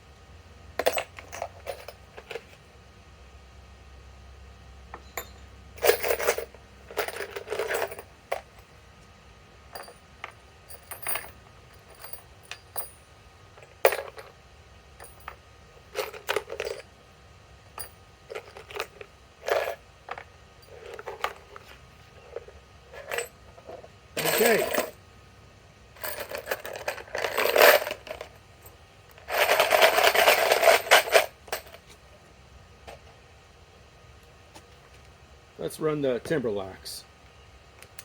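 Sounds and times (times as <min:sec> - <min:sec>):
metal screws clinking: 0:05.0 - 0:08.6, 0:15.0 - 0:16.9, 0:23.0 - 0:25.0, 0:26.0 - 0:28.4.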